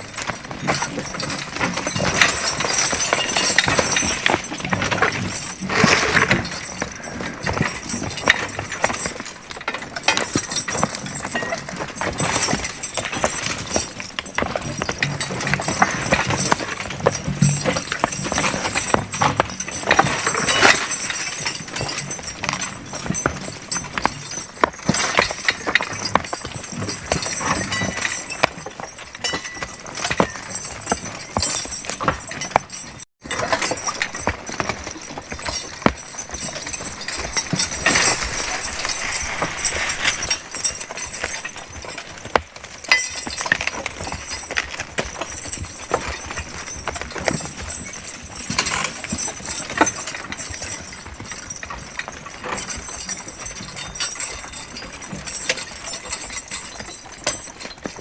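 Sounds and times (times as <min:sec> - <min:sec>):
clicks and rattles: 0:00.0 - 0:47.8
hoof steps on forest floor: 0:33.5 - 0:47.4.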